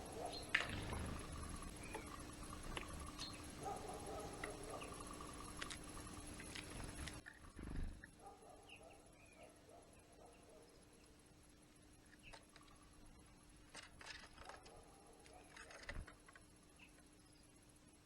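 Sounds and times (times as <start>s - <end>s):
garden birds chirping: 0.0s - 13.6s.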